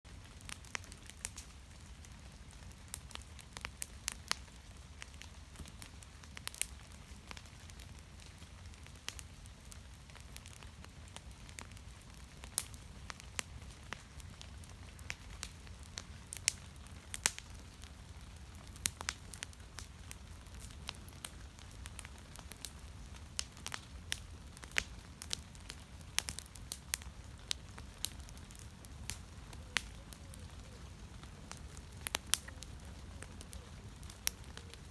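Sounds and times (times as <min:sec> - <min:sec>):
wood fire crackling: 0:00.1 - 0:34.9.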